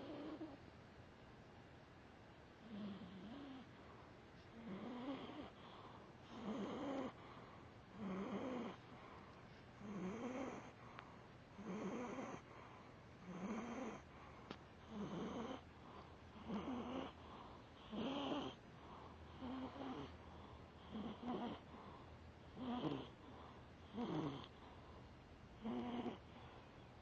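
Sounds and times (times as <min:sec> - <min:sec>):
cat snoring: 0:00.0 - 0:00.6, 0:02.6 - 0:03.7, 0:04.6 - 0:09.1, 0:09.8 - 0:10.8, 0:11.6 - 0:14.2, 0:14.8 - 0:22.0, 0:22.6 - 0:24.7, 0:25.6 - 0:26.6.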